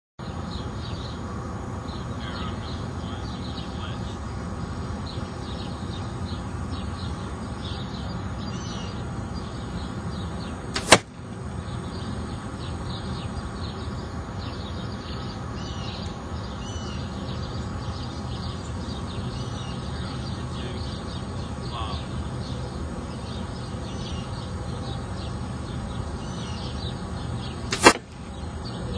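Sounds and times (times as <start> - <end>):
birds chirping: 0.2 - 28.9
arrow shot crack: 10.8 - 11.1, 27.7 - 28.2.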